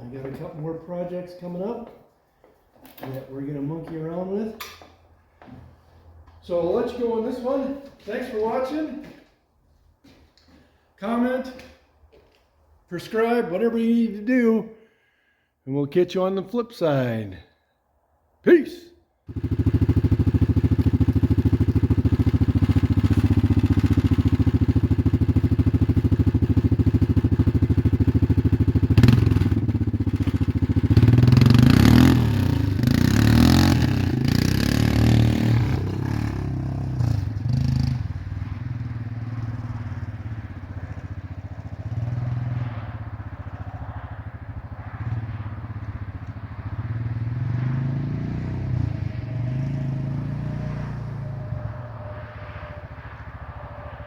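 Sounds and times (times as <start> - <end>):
atv engine idling and revving: 19.3 - 54.0.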